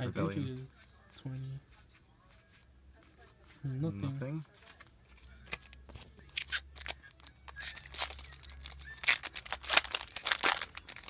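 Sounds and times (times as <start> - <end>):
foil wrappers crinkling: 5.6 - 11.0.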